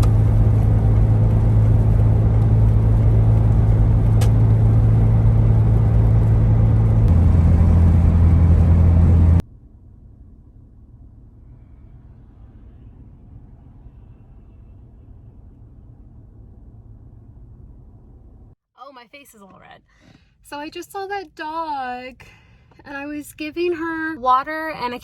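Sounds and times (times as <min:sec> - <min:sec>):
car engine and road drone: 0:00.0 - 0:18.6.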